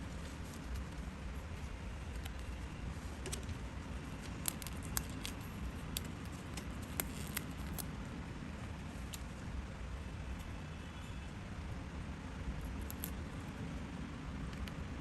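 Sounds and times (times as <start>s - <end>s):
steady low hum: 0.0s - 15.0s
paper and crafting tools clicking: 4.2s - 7.9s, 12.8s - 13.1s.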